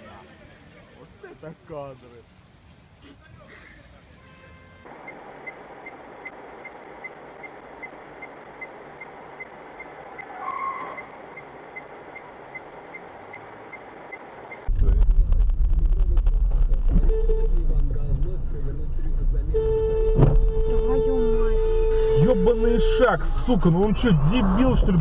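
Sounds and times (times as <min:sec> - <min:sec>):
car road noise: 0:00.0 - 0:25.0
regular light ticking: 0:04.9 - 0:10.3, 0:10.9 - 0:14.7
loud low vehicle rumble: 0:04.9 - 0:25.0
short tone: 0:17.0 - 0:17.7.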